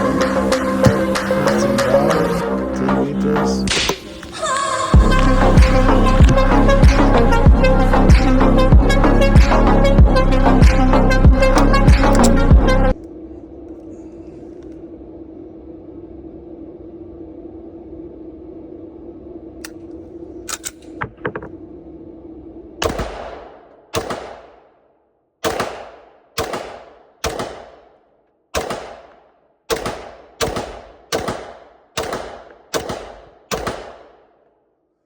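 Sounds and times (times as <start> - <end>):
pistol shots echoing: 22.8 - 24.7, 25.4 - 34.4.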